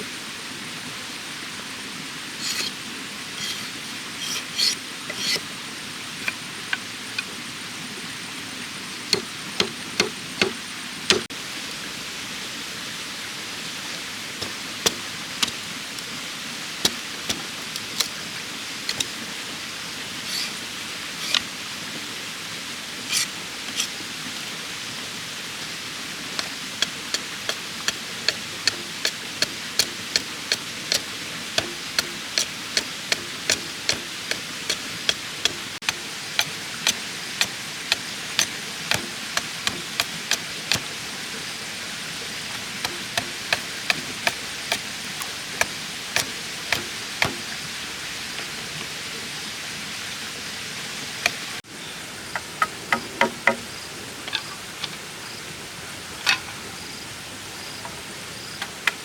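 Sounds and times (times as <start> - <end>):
steady hiss: 0.0 - 59.0
blade chopping bamboo: 2.4 - 2.8, 3.4 - 5.5, 9.1 - 11.3, 14.3 - 19.4, 20.0 - 21.6, 23.1 - 24.6, 25.6 - 48.3.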